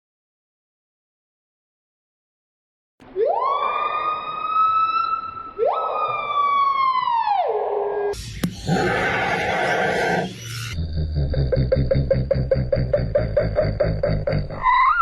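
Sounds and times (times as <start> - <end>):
siren-like wails: 3.1 - 10.8
sharp click: 8.2 - 8.7
noisy sound: 8.2 - 14.6.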